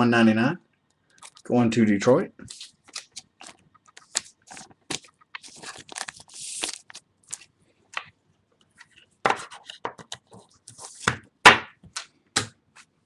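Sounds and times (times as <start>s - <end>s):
plastic sleeve crinkle: 1.1s - 1.5s, 2.5s - 7.5s
card sleeves rustling and clicking: 2.5s - 7.5s.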